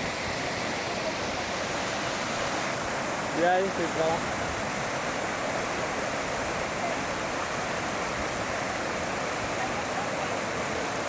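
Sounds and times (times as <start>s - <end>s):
waterfall rushing water: 0.0s - 11.0s.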